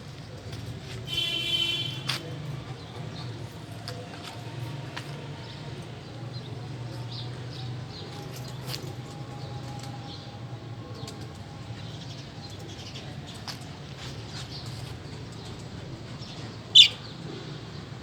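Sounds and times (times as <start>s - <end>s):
lovebirds chirping: 16.2s - 17.2s.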